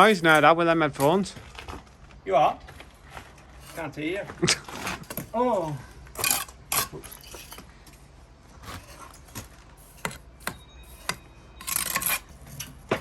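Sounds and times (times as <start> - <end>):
trowel scraping brick and mortar: 0.0 - 0.5, 3.5 - 5.4, 6.1 - 7.7, 8.6 - 13.0.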